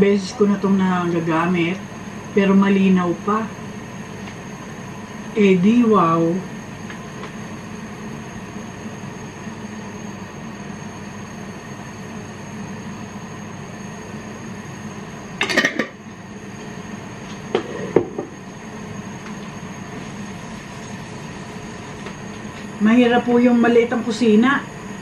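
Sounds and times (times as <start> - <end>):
cooking hum and hiss: 0.0 - 25.0
cookware clattering: 15.4 - 16.0.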